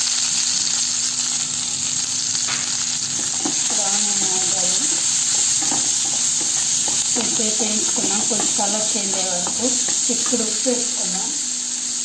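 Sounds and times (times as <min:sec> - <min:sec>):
onion sizzling in hot oil: 0:00.0 - 0:12.0.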